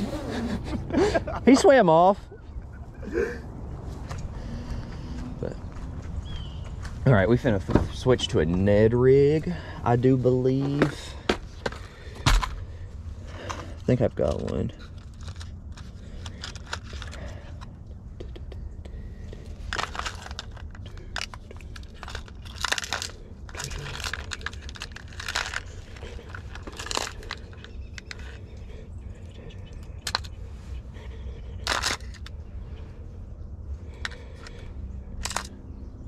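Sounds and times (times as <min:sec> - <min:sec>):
steady low rumble: 0:00.0 - 0:36.0
plastic packaging rustling and crinkling: 0:19.6 - 0:28.4.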